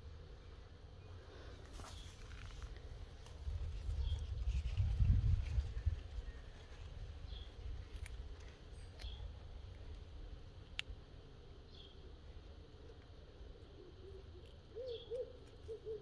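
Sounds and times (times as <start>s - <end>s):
tortoise biting leaves: 1.7s - 11.0s.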